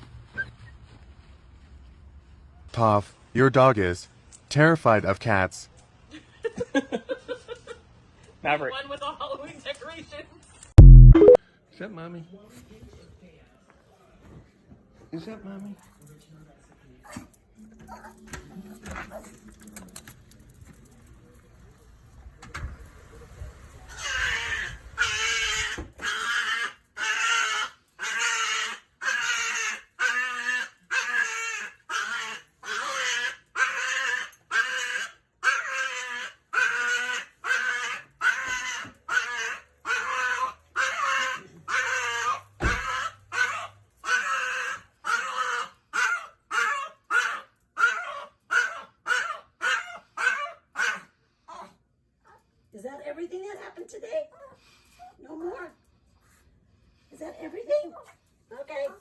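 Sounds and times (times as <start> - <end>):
dog drawn-out calls: 23.9 - 51.7.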